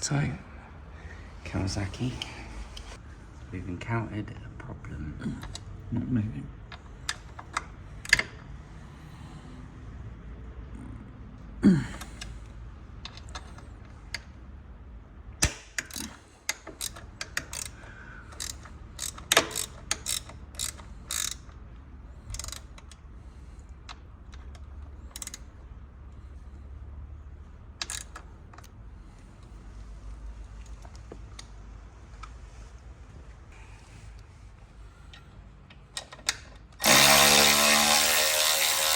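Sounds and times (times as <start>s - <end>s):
ratchet clicks: 6.7s - 8.4s, 15.4s - 21.6s, 22.2s - 23.1s, 23.8s - 25.6s, 27.8s - 28.7s, 35.9s - 38.9s.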